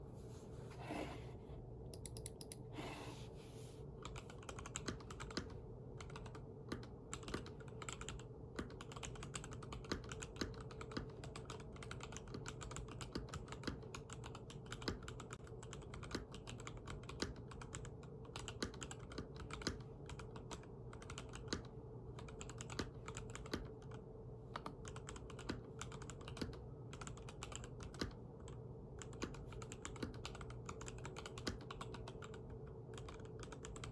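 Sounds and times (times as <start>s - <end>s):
typing on mechanical keyboard: 1.9s - 2.6s, 4.0s - 33.9s.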